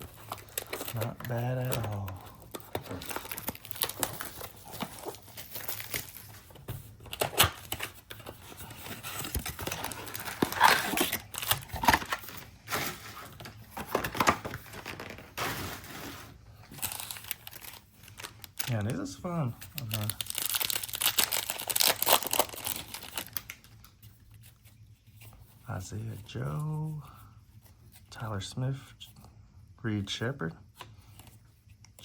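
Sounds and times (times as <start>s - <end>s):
wrapper crinkling and tearing: 0.0s - 6.4s, 7.0s - 23.9s
cards being handled: 0.0s - 15.3s.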